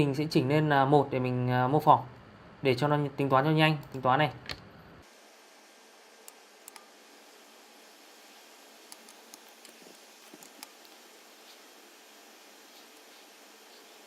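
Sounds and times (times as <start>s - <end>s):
faint steady hiss: 0.0s - 14.0s
computer mouse clicks: 6.3s - 6.9s, 8.9s - 11.0s.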